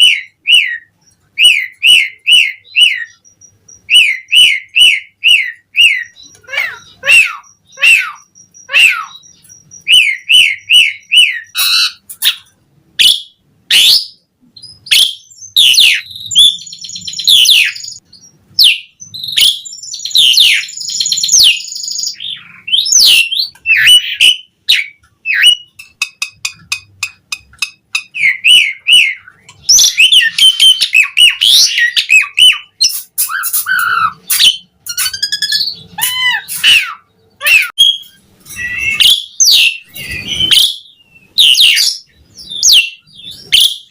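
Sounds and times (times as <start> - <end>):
starling singing: 0.0 - 43.9.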